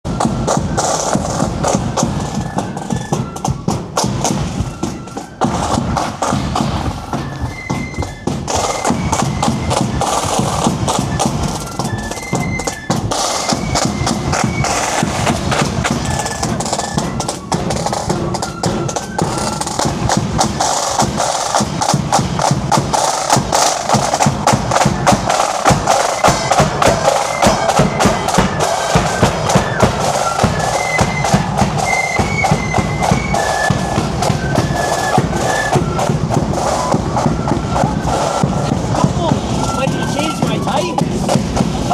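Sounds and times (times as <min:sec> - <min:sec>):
marching band playing: 0:00.0 - 0:41.9
snare and bass drums: 0:00.0 - 0:41.9.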